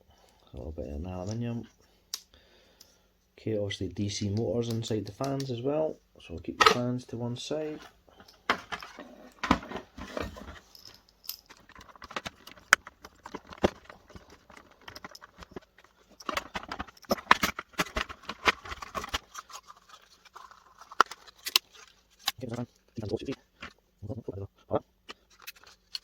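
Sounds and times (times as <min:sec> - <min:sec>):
plastic and metal parts clattering: 0:06.4 - 0:07.0, 0:07.7 - 0:23.8, 0:25.1 - 0:26.0.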